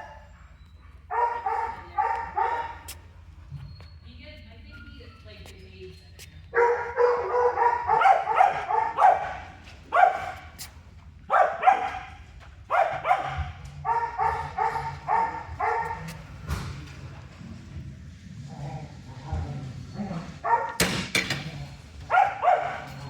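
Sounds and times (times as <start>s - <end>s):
dog barking: 0.0s - 0.4s, 1.1s - 3.0s, 6.5s - 10.7s, 11.3s - 16.5s, 20.1s - 20.9s, 22.0s - 23.0s.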